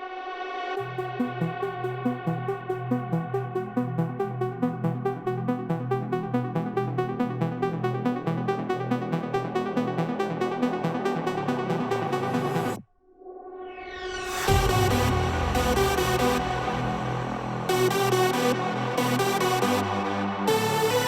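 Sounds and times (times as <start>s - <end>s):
electronic dance music: 0.8s - 12.8s
held synth chord: 0.8s - 12.8s
pulsing bass line: 0.8s - 12.8s.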